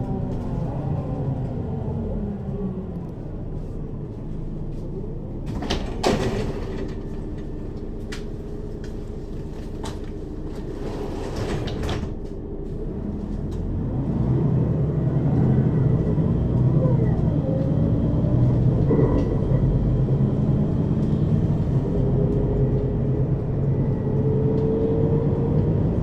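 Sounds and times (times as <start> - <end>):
bus engine idling: 0.0 - 26.0
bus doors clattering and hissing: 5.4 - 12.9.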